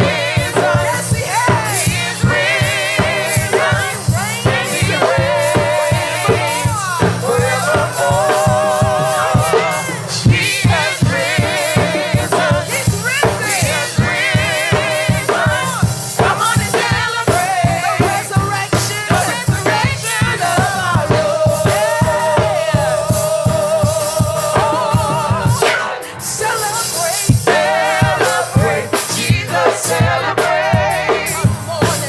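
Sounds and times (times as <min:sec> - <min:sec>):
drum kit beat: 0:00.0 - 0:32.0
voices singing with vibrato: 0:00.0 - 0:32.0.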